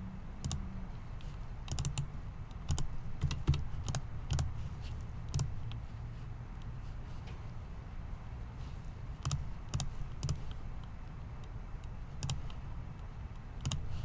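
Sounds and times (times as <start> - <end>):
low steady hum: 0.0 - 14.0
keyboard and mouse clicks: 0.4 - 0.7, 1.3 - 4.5, 5.3 - 5.8, 9.2 - 13.9.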